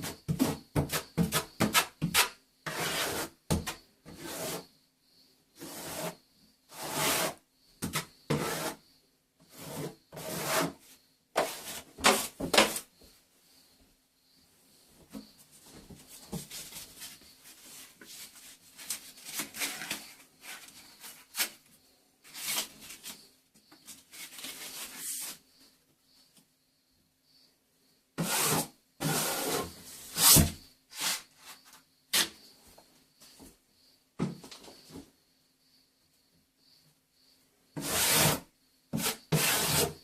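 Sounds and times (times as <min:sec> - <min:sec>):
plastering knife scraping: 0:00.0 - 0:04.7, 0:05.6 - 0:08.8, 0:09.5 - 0:10.8, 0:11.4 - 0:12.8, 0:28.2 - 0:31.6, 0:37.8 - 0:38.4, 0:39.0 - 0:40.0.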